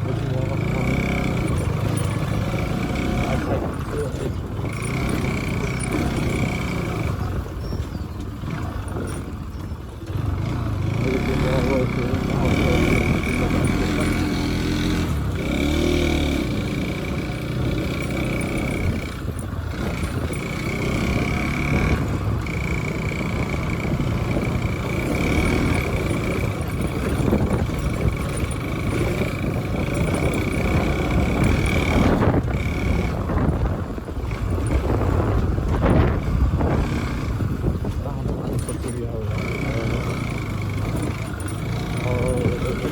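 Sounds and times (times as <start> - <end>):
passing traffic: 0.0 - 42.9
vehicle running: 0.0 - 42.9
wind noise: 17.5 - 39.4.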